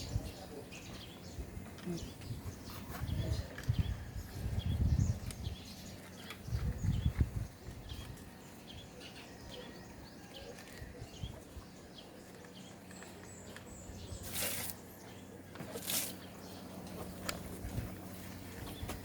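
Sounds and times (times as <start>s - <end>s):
small birds chirping: 0.0s - 19.0s.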